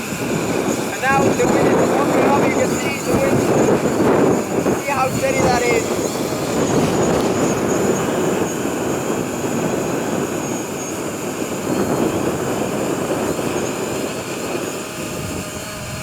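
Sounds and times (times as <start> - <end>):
drone propellers whining: 0.0 - 16.0
wind noise on microphone: 0.0 - 16.0.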